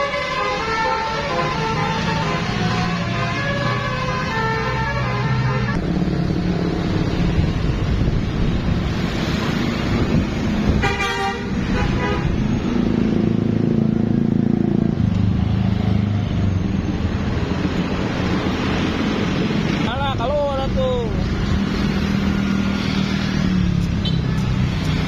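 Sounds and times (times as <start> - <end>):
multi-tone bus horn: 0.0 - 5.8, 10.7 - 12.4
heavy vehicle traffic noise: 0.0 - 25.0.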